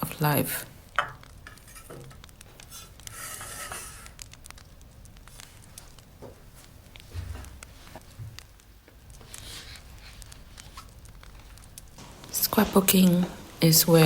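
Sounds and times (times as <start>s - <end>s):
fire crackling: 0.0s - 14.0s
paper rustling: 9.2s - 12.4s.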